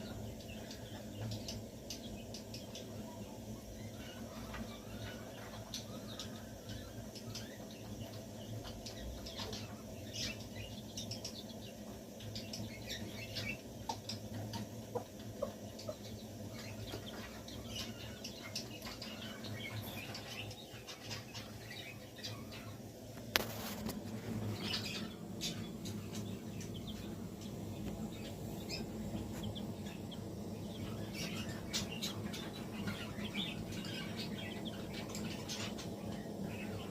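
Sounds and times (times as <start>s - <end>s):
chick peeping: 0.0s - 36.9s.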